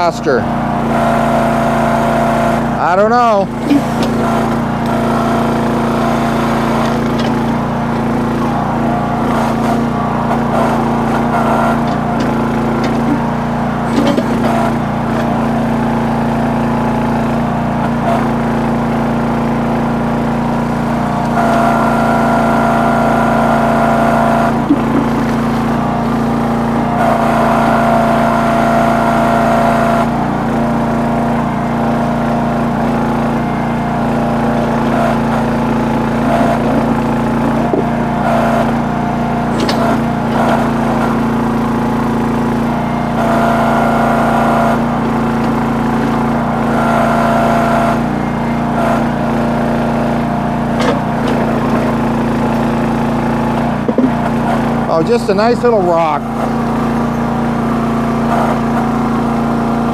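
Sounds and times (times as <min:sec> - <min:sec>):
backhoe engine running: 0:00.0 - 0:59.9
high whine: 0:21.2 - 0:49.2.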